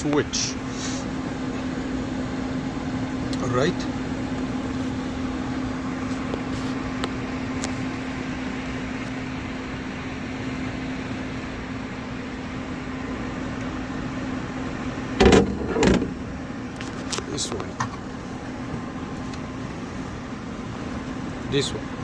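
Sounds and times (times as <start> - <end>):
furnace blower fan humming: 0.0 - 22.0
loud knocks: 15.2 - 16.3.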